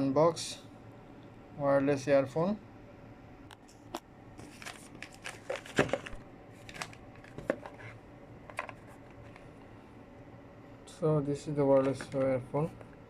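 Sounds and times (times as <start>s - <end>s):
packaging crinkling and rustling: 4.4s - 9.5s.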